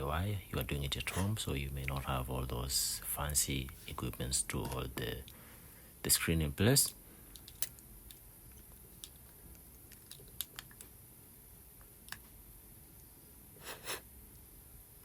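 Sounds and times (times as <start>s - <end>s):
faint clicks and taps: 6.9s - 11.0s, 11.8s - 13.1s.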